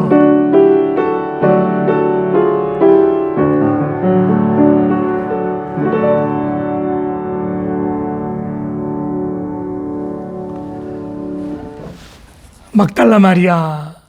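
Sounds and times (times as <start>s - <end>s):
slow gentle solo piano: 0.0s - 12.6s.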